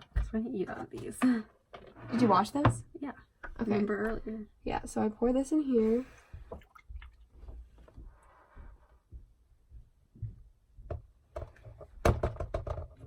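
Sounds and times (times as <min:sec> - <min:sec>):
plastic clicks and knocks: 0:10.9 - 0:13.0.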